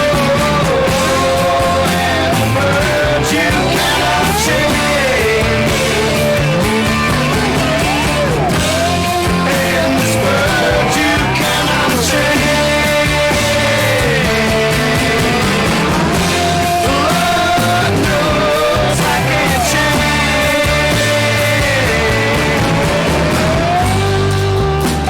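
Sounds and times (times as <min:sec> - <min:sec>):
electric guitar bending notes: 0:00.0 - 0:25.0
rock band with bass and drums: 0:00.0 - 0:25.0.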